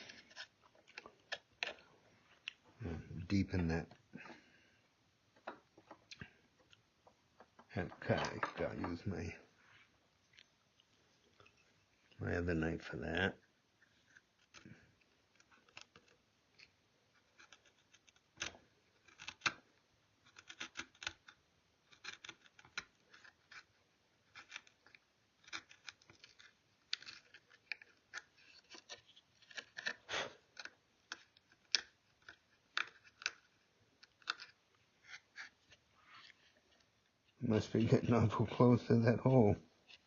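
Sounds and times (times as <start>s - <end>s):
knife scraping wood: 0.0s - 1.8s, 19.0s - 19.5s, 21.9s - 36.8s.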